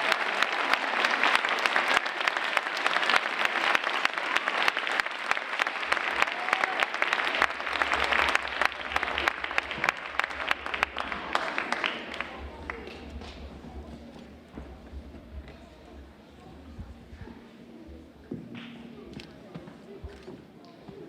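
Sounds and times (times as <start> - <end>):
audience applauding: 0.0 - 14.4.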